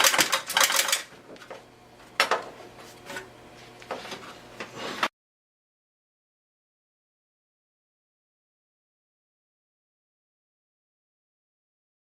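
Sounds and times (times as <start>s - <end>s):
metal computer case clattering: 0.0s - 1.1s.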